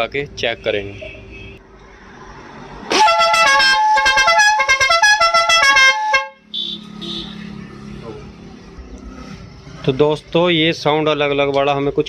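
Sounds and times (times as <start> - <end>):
electric air horn sequence: 2.9 - 7.4.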